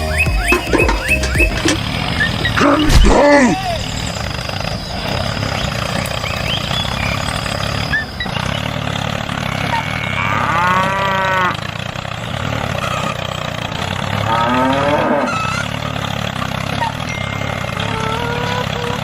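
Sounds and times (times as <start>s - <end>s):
small tractor engine humming: 0.0s - 19.0s
cow mooing: 9.5s - 11.7s, 14.1s - 15.8s.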